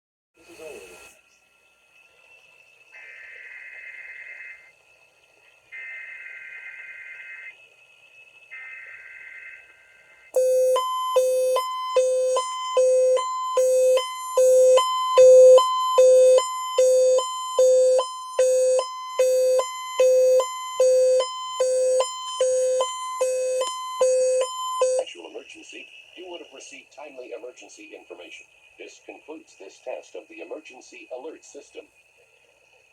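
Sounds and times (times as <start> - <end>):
loud pulsing beep: 10.4 - 25.1.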